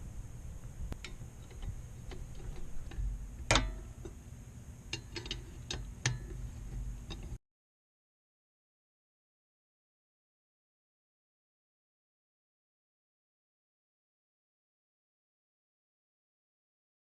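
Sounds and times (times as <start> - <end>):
low steady hum: 0.0 - 7.4.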